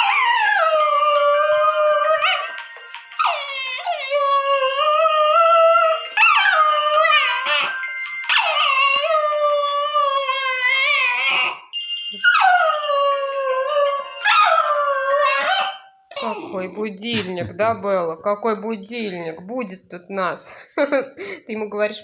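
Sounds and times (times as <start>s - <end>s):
dog howling: 0.0s - 2.5s, 3.2s - 16.3s
phone alarm melody: 1.1s - 9.8s, 11.1s - 16.0s.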